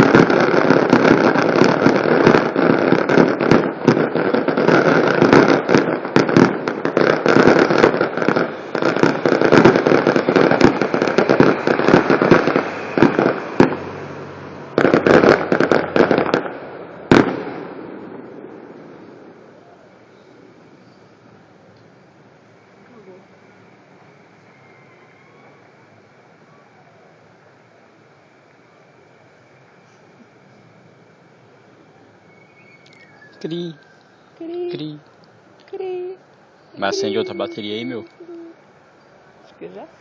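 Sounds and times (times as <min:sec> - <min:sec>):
fireworks bangs and crackling: 0:00.0 - 0:40.0.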